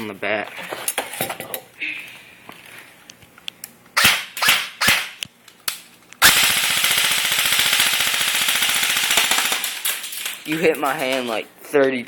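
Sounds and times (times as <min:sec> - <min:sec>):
airsoft gun shots: 0:04.0 - 0:05.2, 0:06.2 - 0:09.8.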